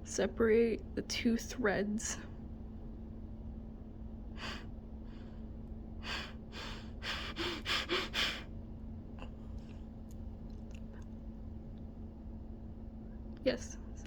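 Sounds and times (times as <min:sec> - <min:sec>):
faint steady hum: 0:00.0 - 0:14.0
person breathing: 0:04.4 - 0:08.5.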